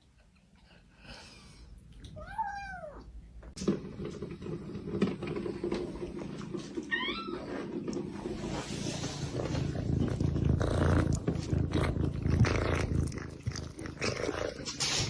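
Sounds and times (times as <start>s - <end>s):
cat purring: 8.0s - 15.0s.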